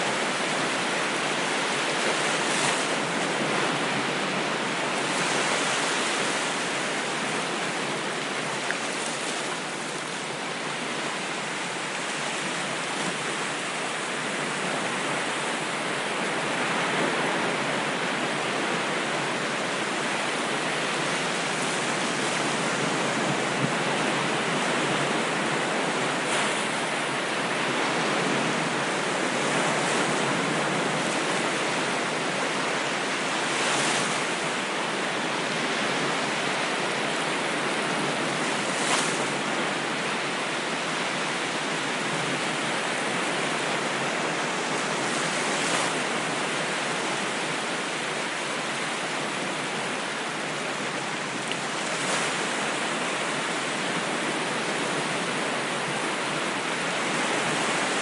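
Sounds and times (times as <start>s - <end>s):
ocean waves washing: 0.0s - 58.0s.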